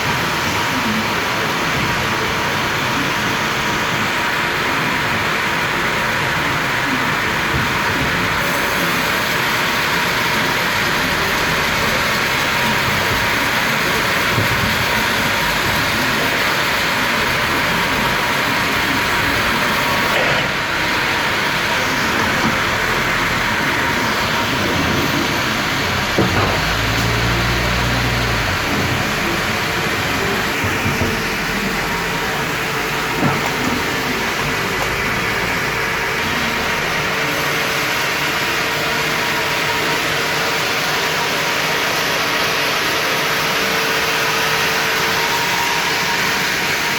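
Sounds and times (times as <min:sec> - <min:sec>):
sawmill machinery running: 0:00.0 - 0:46.9.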